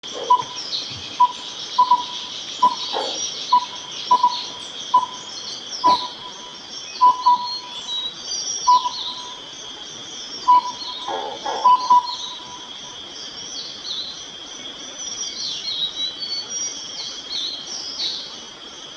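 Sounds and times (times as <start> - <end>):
insect-like hiss: 0.1 - 18.9
bird chirps: 0.2 - 9.5, 10.3 - 12.7
bird hooting: 10.5 - 12.6.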